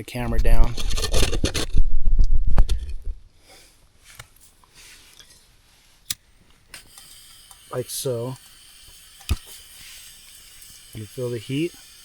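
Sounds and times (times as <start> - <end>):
camera handling rumble: 0.2 - 3.2
faint hiss: 3.3 - 12.0.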